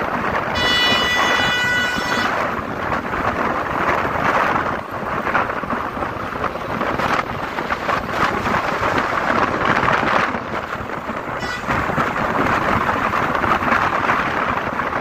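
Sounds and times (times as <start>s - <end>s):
highway traffic rushing: 0.0s - 15.0s
wind buffeting microphone: 0.0s - 15.0s
faint distant horn: 0.6s - 2.4s, 11.4s - 11.9s.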